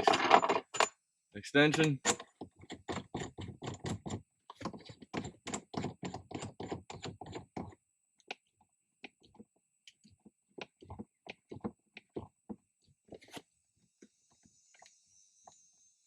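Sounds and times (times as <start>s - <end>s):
metal parts clicking and tapping: 1.6s - 7.8s.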